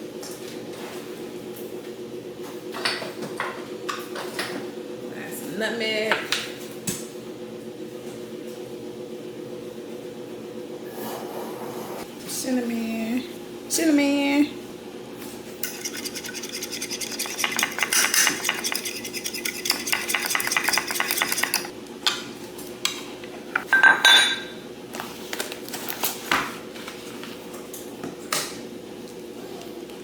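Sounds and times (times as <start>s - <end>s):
batter beaten in bowl: 15.6s - 21.7s
utensil clinking against bowl: 15.6s - 21.7s.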